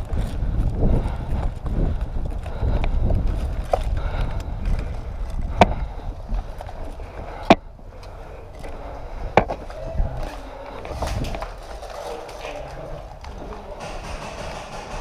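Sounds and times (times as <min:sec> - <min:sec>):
footfalls and gear jostling: 0:00.0 - 0:15.0
airsoft gun shots: 0:13.8 - 0:15.0.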